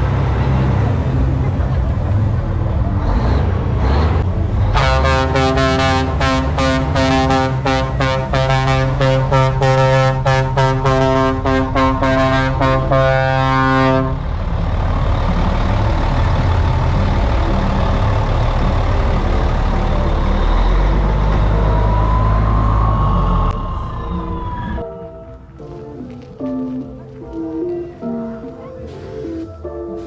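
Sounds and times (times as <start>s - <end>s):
diesel truck engine running: 0.0s - 24.9s
background music: 0.0s - 30.0s
faint whistle: 21.9s - 24.9s.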